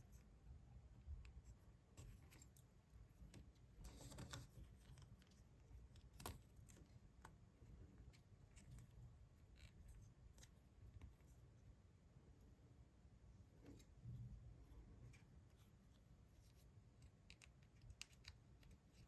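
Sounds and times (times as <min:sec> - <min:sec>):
soft plastic clicks: 0:16.5 - 0:19.0.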